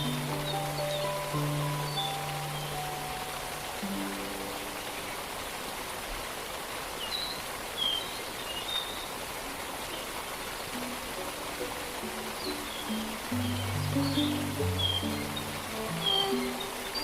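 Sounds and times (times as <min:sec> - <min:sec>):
bird chirps: 0:00.0 - 0:05.2, 0:12.4 - 0:17.0
faint held music notes: 0:00.0 - 0:05.4, 0:10.7 - 0:17.0
distant waterfall rushing: 0:00.0 - 0:17.0.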